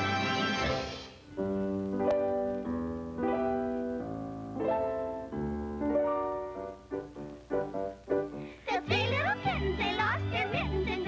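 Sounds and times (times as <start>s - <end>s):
slow piano melody: 0.0s - 8.6s.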